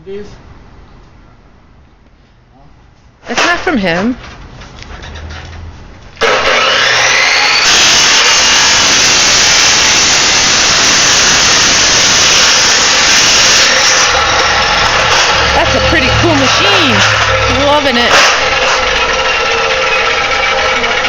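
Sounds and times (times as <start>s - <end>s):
harsh grinding noise: 6.2s - 21.0s
power tool motor whining: 6.2s - 21.0s.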